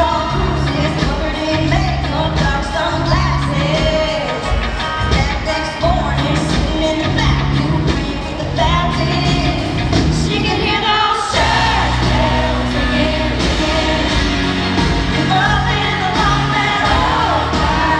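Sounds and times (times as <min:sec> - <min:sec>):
country pop band playing: 0:00.0 - 0:17.9
woman singing: 0:00.0 - 0:17.9.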